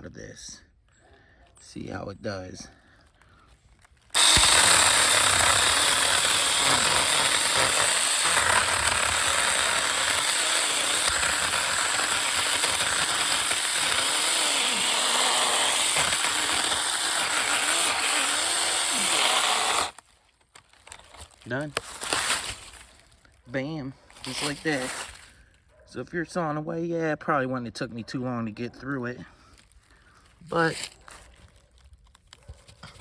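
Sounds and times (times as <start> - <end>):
electric chainsaw cutting log: 4.1 - 20.0, 21.8 - 22.8.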